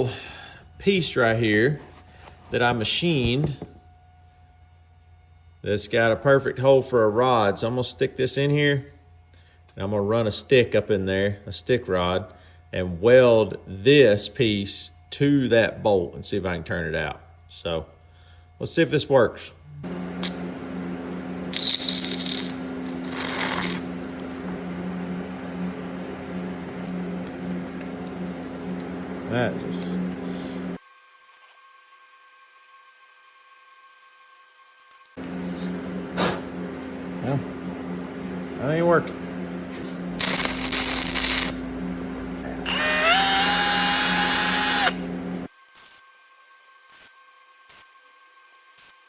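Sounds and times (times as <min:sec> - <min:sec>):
steady hum: 0:00.0 - 0:30.8, 0:35.2 - 0:45.5
power tool motor whine: 0:19.8 - 0:38.5, 0:39.1 - 0:49.0
welding arc crackling: 0:21.3 - 0:30.8, 0:39.3 - 0:46.0.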